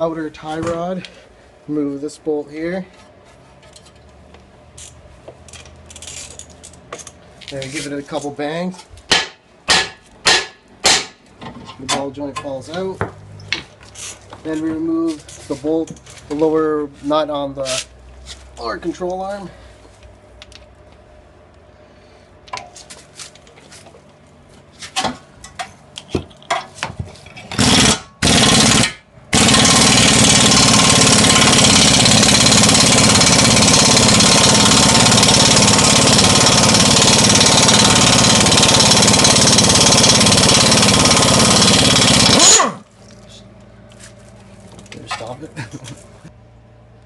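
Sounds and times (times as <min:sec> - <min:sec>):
impact wrench hammering: 0:09.1 - 0:11.2, 0:27.5 - 0:42.7.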